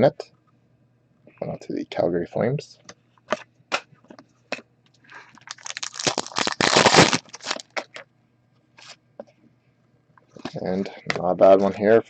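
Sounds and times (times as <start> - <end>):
cards and packaging crinkling: 5.1 - 8.0.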